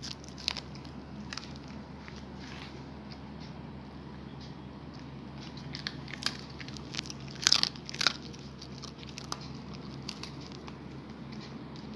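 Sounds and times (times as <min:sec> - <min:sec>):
puppy crunching a hard snack: 0:00.0 - 0:02.6, 0:05.4 - 0:11.9.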